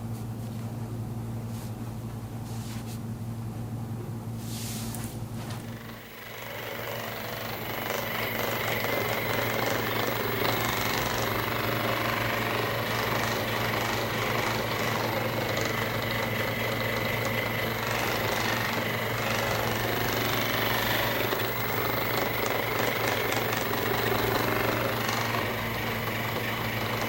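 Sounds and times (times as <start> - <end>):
small electric motor buzzing: 5.7 - 27.0.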